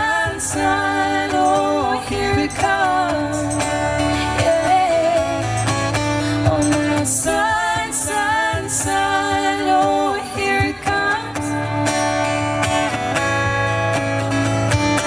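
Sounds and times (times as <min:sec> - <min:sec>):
person singing: 0:00.0 - 0:11.9
guitar: 0:00.0 - 0:15.0
steady bass: 0:00.0 - 0:15.0.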